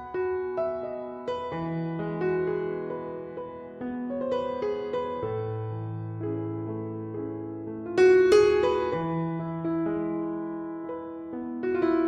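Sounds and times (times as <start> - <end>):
gentle piano chords: 0.0 - 12.0.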